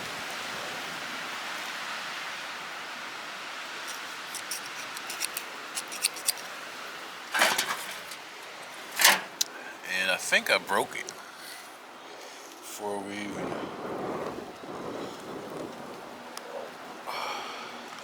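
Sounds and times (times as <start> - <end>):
rivet gun metallic rattle: 3.8 - 6.5, 7.3 - 9.5.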